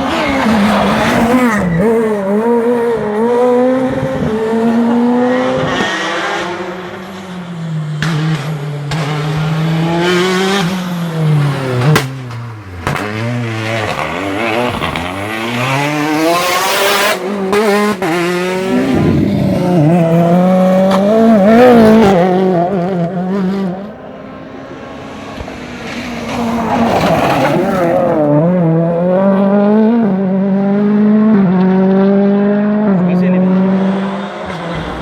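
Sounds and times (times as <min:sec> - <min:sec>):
tyre squeal: 0:00.0 - 0:02.2
rally car engine revving: 0:00.0 - 0:35.0.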